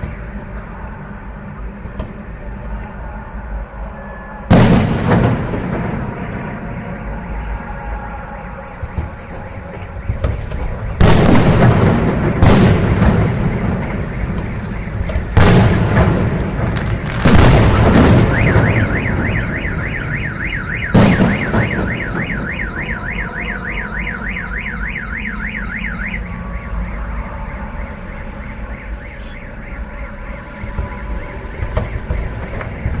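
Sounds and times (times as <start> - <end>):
car alarm warbling: 3.8 - 33.0
fireworks booming: 4.5 - 7.6, 8.8 - 24.5, 30.6 - 33.0.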